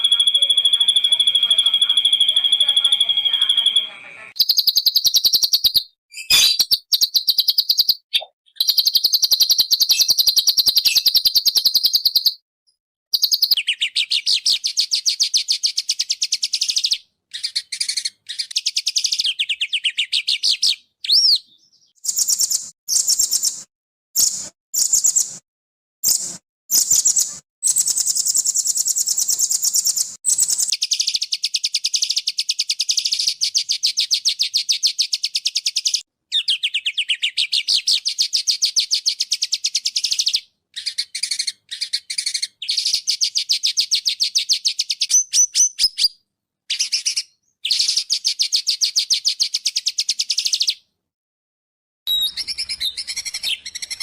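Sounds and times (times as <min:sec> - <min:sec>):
songbird trilling: 0:00.0 - 0:12.3, 0:44.3 - 0:46.1, 0:52.1 - 0:54.0.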